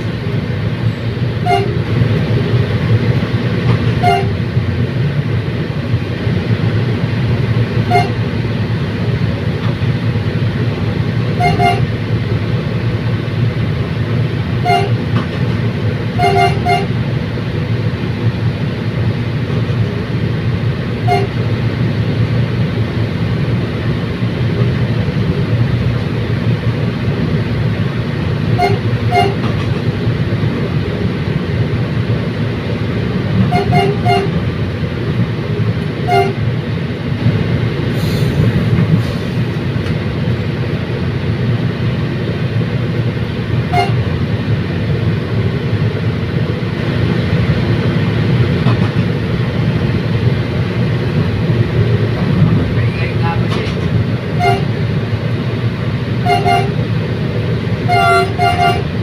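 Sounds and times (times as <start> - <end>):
train rumbling on track: 0.0 - 59.0
train horn toots: 1.4 - 1.9, 3.9 - 4.4, 7.8 - 8.2, 11.4 - 11.9, 14.6 - 15.1, 16.2 - 17.0, 21.0 - 21.4, 28.5 - 29.5, 33.4 - 34.4, 36.0 - 36.4, 43.7 - 44.1, 54.3 - 54.8, 56.2 - 56.8, 57.9 - 59.0.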